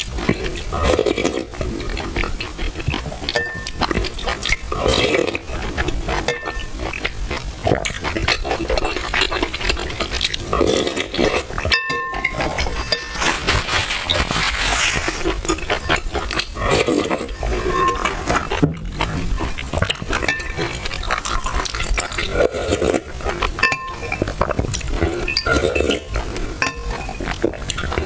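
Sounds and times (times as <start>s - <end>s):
wet chewing and slurping: 0.0s - 28.0s
spoon clinking against bowl: 3.3s - 3.9s, 6.3s - 6.7s, 11.6s - 13.3s, 20.2s - 20.6s, 23.6s - 24.3s, 25.3s - 27.2s.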